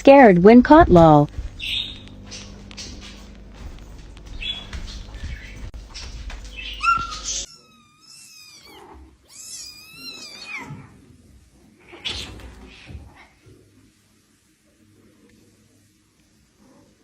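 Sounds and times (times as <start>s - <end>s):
knocks and shuffling: 0.0s - 7.5s
cat meowing: 6.8s - 10.9s.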